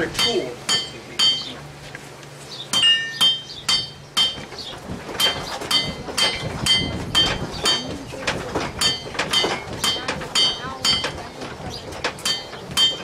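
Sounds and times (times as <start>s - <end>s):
hammer striking iron on anvil: 0.0s - 1.6s, 2.7s - 4.6s, 5.2s - 7.9s, 8.8s - 11.2s, 12.0s - 13.0s.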